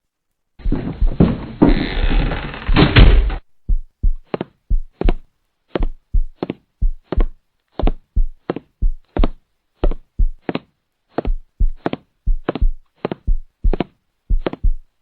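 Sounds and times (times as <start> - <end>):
sharp irregular knocks: 0.6 - 3.4.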